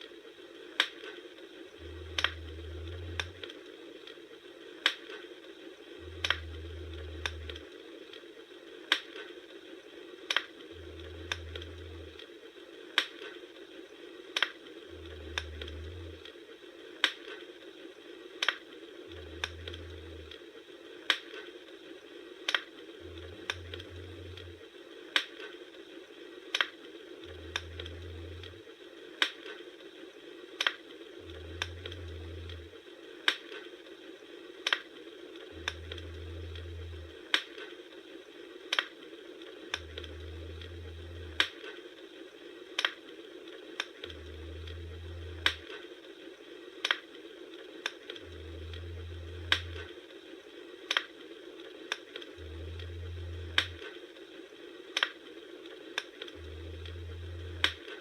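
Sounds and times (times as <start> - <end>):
campfire crackling and popping: 0.0 - 58.0
soft hiss: 0.0 - 58.0
low rumble: 1.8 - 3.6, 6.0 - 7.8, 10.7 - 12.2, 14.9 - 16.3, 19.1 - 20.4, 23.0 - 24.6, 27.2 - 28.7, 31.2 - 32.8, 35.5 - 37.2, 39.7 - 41.6, 44.0 - 45.7, 48.2 - 49.9, 52.3 - 53.8, 56.3 - 57.9.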